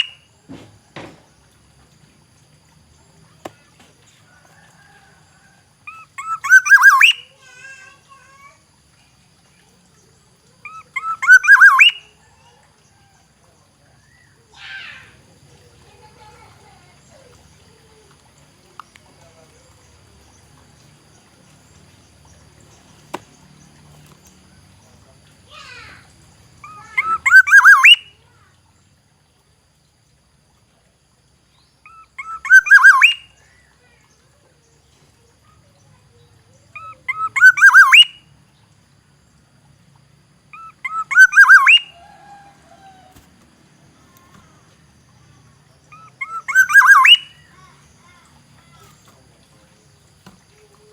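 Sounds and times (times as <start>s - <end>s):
oriole singing fluty whistles: 0.0s - 0.2s, 5.9s - 7.3s, 10.7s - 12.1s, 26.8s - 28.1s, 31.9s - 33.4s, 36.8s - 38.2s, 40.6s - 42.3s, 45.9s - 47.4s.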